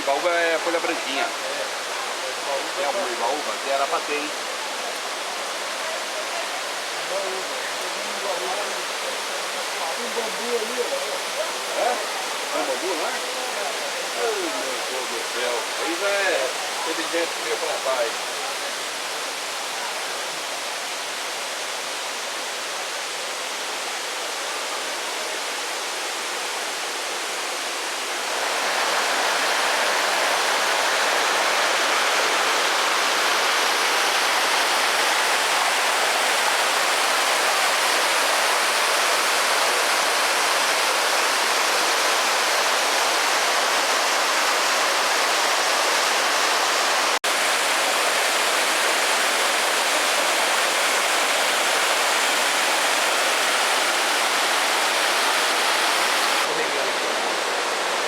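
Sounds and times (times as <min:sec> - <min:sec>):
rushing water: 0:00.0 - 0:58.0.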